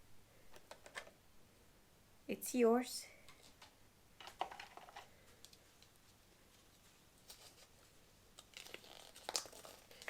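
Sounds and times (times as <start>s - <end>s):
packaging rustling and clicking: 8.4s - 10.0s.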